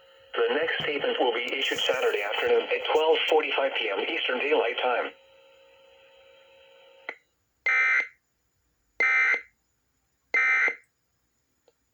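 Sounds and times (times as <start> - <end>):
faint steady hum: 0.0 - 8.6
harsh digital data bursts: 1.5 - 3.4.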